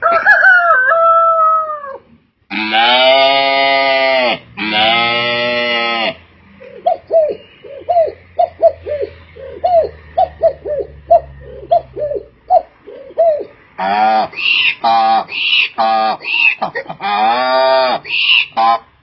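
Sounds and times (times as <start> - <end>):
man imitating pigeon cooing: 6.7 - 15.2.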